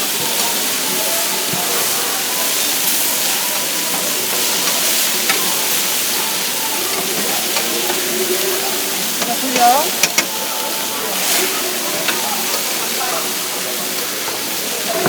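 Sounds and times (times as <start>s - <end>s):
faint voices: 0.0s - 15.0s
steak sizzling: 0.0s - 15.0s.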